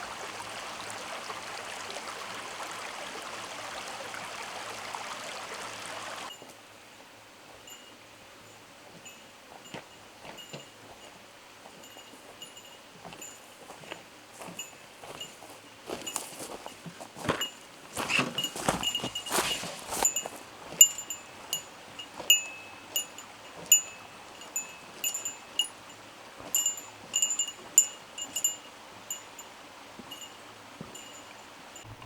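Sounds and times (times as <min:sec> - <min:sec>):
light metallic clinks: 0:07.6 - 0:32.0
handling and rustling: 0:08.9 - 0:25.4.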